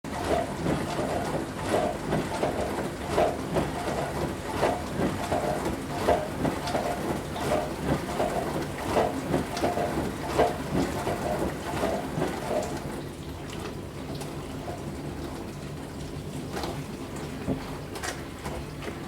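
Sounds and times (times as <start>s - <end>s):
dishwasher pump hum: 0.1s - 19.0s
water churning and spraying: 5.2s - 19.0s.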